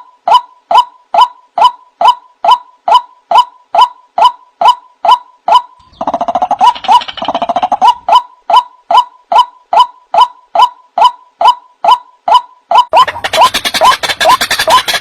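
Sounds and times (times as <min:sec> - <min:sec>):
waterhen call repeated notes: 0:00.0 - 0:15.0
fast bird chattering: 0:05.8 - 0:08.2, 0:12.9 - 0:15.0.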